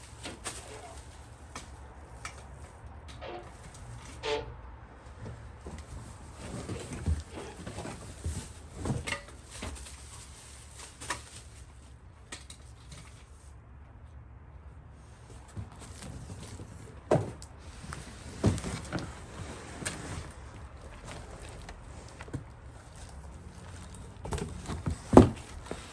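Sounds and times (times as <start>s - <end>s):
furniture parts clattering: 23.1s - 25.9s.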